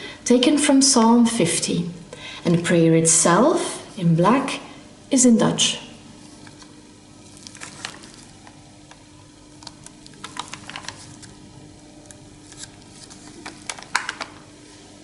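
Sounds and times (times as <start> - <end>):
faint steady hum: 0.0 - 15.0
parchment pages rustling: 7.3 - 11.4, 12.0 - 14.4.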